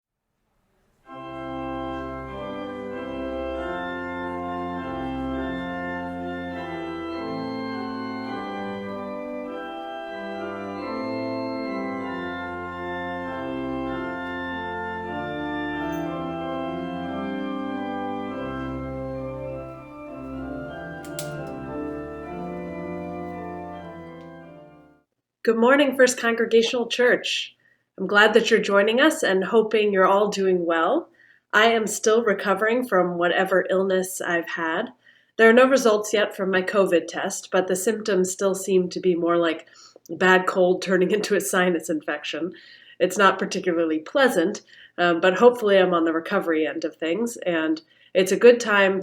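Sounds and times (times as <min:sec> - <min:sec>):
organ playing sustained chords: 0:01.1 - 0:25.0.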